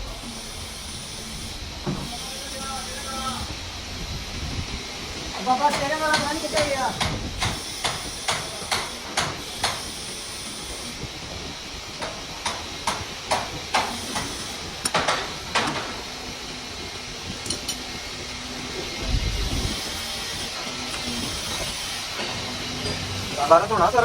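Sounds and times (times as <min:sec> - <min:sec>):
steady hiss: 0:00.0 - 0:24.0.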